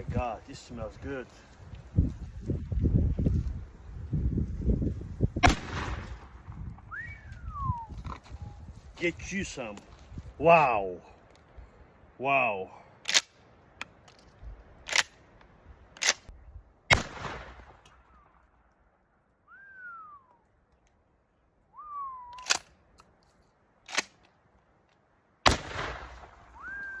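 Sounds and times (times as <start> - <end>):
shotgun shots with echo: 5.4 - 6.4, 16.9 - 17.8, 25.5 - 26.6
whistle-like calls: 6.9 - 8.6, 19.4 - 20.4, 21.7 - 22.6, 26.6 - 27.0.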